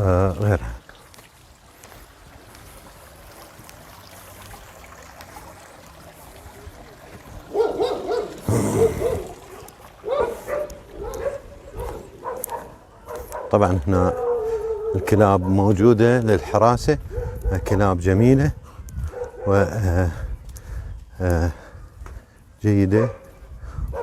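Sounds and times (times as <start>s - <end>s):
dogs barking and yelping: 6.6s - 17.8s, 19.0s - 19.7s, 23.0s - 24.0s.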